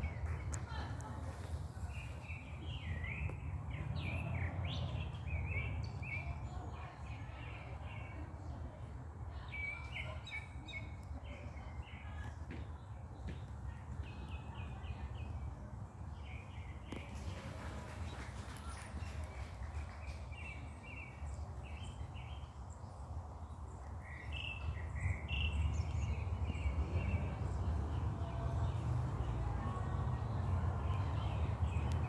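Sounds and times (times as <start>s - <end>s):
birds chirping: 16.2s - 22.6s.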